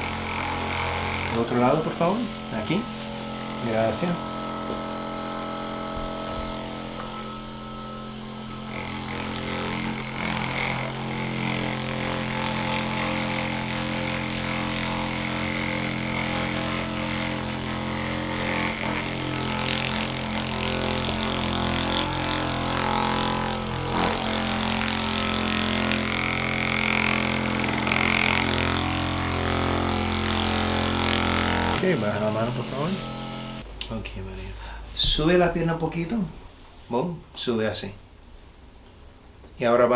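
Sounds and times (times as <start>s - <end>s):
small electric motor humming: 0.0s - 33.7s
soft rubbing noise: 1.4s - 7.8s, 31.8s - 36.9s.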